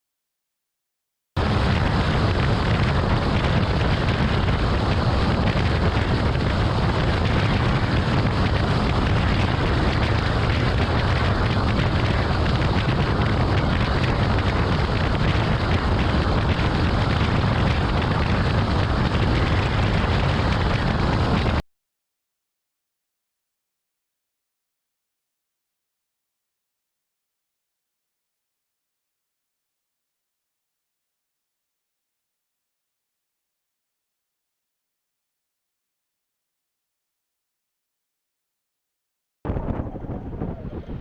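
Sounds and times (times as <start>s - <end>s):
heavy rain: 1.4s - 21.6s
wind buffeting microphone: 1.4s - 21.6s, 39.5s - 41.0s.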